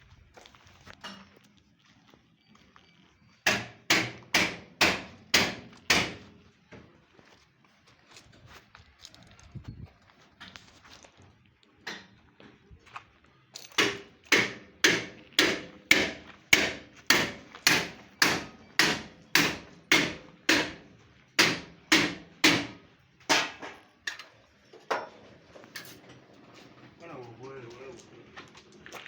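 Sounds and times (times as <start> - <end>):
hammer blows ringing: 13.8 - 20.8, 21.4 - 23.7.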